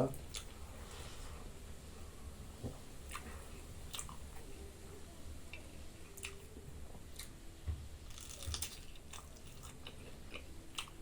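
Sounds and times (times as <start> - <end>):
person chewing food: 0.3 - 0.6, 3.1 - 4.3, 5.5 - 6.5, 8.1 - 11.0.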